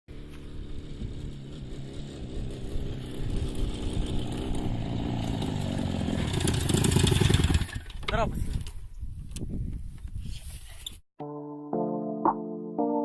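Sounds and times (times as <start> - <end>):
motorcycle engine running: 0.1 - 8.1.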